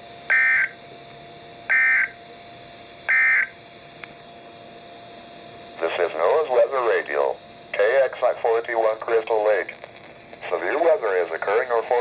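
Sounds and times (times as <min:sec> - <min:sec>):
radio hiss: 0:05.8 - 0:12.0.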